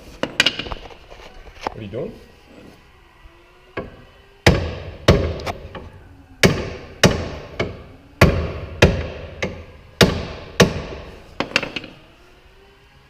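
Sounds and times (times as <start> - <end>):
hammer striking metal: 6.4 - 11.9.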